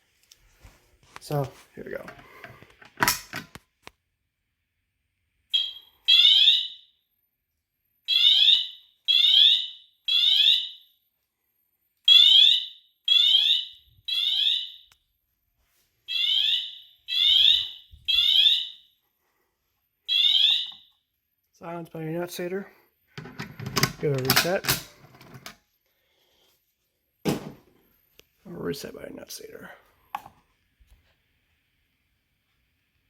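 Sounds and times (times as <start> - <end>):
fire alarm pulsing tone: 5.5 - 7.3, 7.9 - 11.1, 11.7 - 15.0, 16.1 - 19.0, 20.0 - 21.0.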